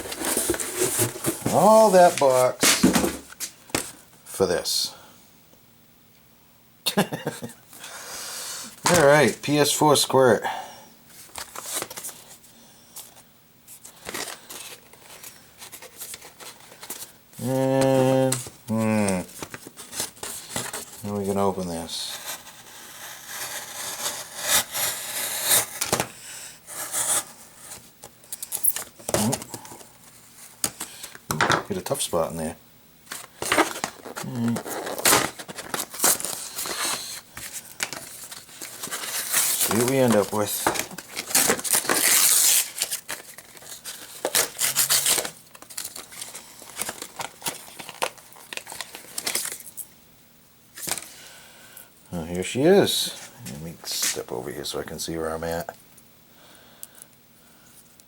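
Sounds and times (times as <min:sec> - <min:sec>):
packaging scraping and crinkling: 0:00.0 - 0:03.5, 0:08.8 - 0:09.5, 0:13.0 - 0:26.1, 0:33.1 - 0:49.8
blade sawing packaging: 0:22.1 - 0:26.0, 0:33.1 - 0:49.5.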